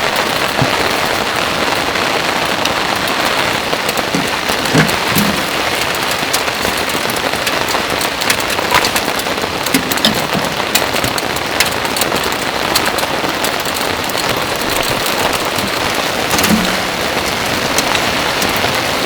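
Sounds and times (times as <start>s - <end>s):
heavy rain falling: 0.0s - 19.0s
heavy drops knocking: 3.6s - 5.8s, 14.9s - 18.6s.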